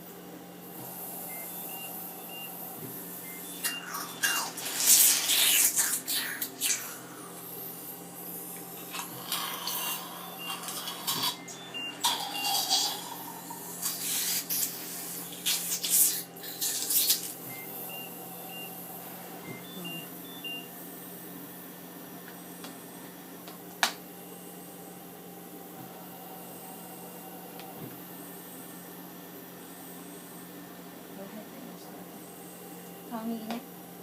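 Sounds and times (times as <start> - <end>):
machine hum: 0.0 - 34.0
short electronic beeps: 19.4 - 20.7.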